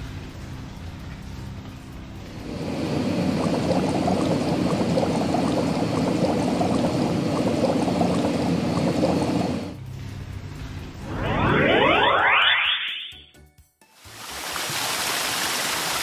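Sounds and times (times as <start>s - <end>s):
water pouring and bubbling: 0.0s - 12.5s.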